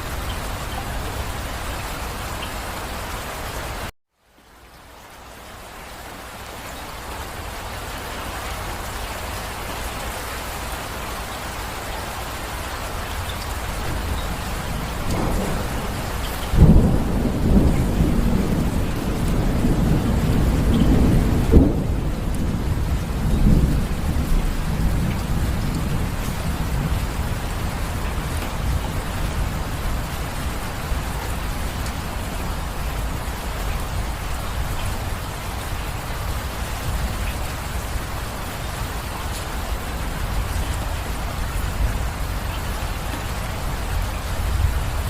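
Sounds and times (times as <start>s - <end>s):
steady rain: 0.0s - 45.0s
thunder rumbling: 13.6s - 45.0s
sharp thunder claps: 13.9s - 27.1s.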